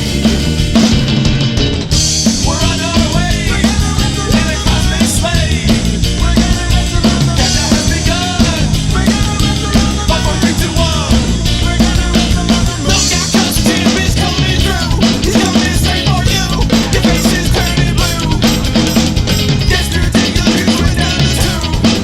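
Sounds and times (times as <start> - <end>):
indie rock song with vocals: 0.0 - 22.0.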